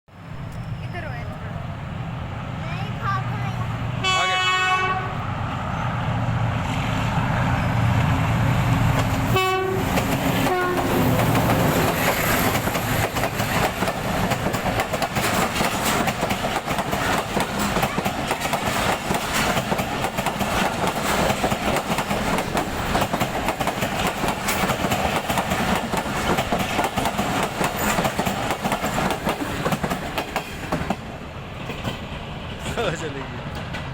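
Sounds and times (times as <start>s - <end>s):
train horn blast: 4.0s - 5.3s, 9.3s - 11.2s
train wheels clattering on rails: 8.7s - 33.9s.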